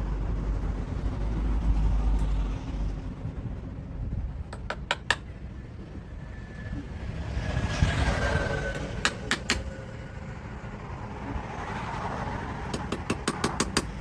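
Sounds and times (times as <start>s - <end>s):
steady low rumble: 0.0s - 12.7s
hammer striking metal: 4.5s - 5.3s, 8.7s - 9.8s.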